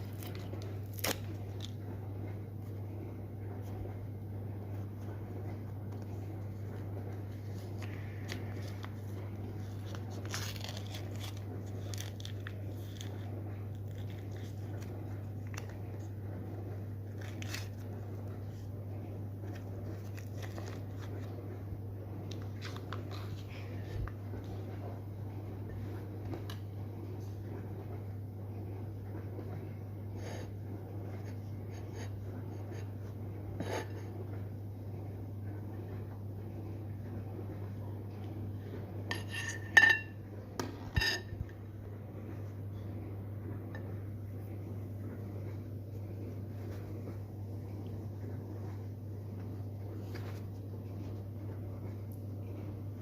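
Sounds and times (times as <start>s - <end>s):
rustling handling sounds: 0.0s - 27.4s, 44.0s - 52.8s
low electrical hum: 0.0s - 53.0s
packaging crinkling: 7.4s - 16.0s, 17.0s - 18.3s, 19.4s - 21.4s.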